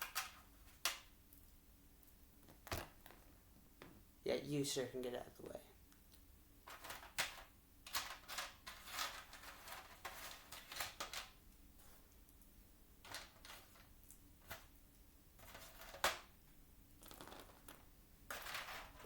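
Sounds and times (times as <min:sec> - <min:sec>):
plastic bricks clicking and rattling: 0:13.0 - 0:13.9.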